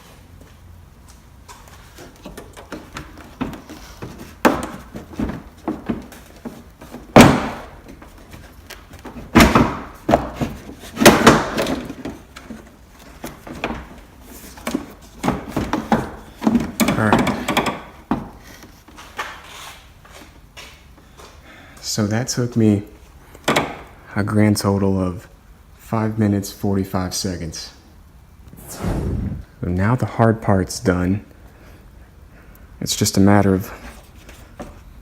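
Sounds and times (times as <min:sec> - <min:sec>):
plastic knocking and rattling: 0:02.0 - 0:18.4.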